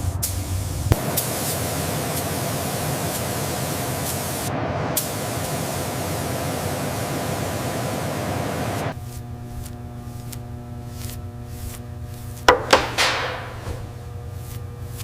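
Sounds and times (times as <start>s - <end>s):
loud spraying hiss: 0.6s - 9.0s
low steady hum: 0.9s - 14.9s
sharp ringing knocks: 12.5s - 13.8s.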